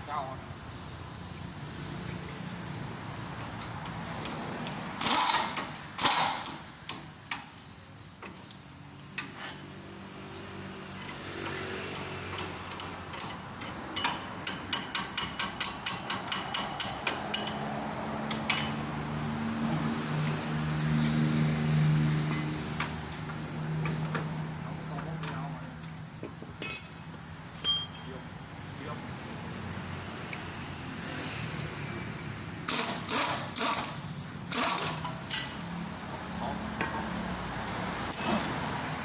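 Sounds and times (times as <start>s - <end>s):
hammer striking metal: 38.1s - 38.8s.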